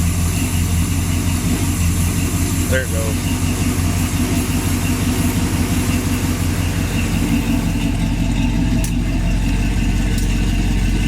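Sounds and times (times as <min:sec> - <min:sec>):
truck engine idling: 0:00.0 - 0:11.0.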